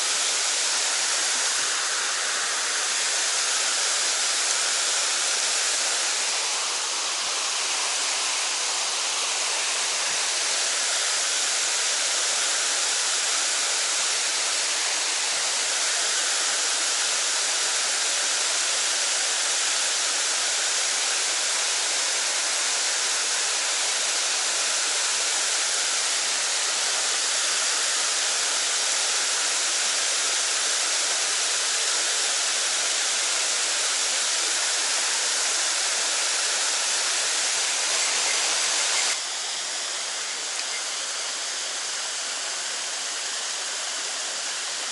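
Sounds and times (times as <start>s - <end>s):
stream water rushing: 0.0s - 18.2s, 33.2s - 44.9s.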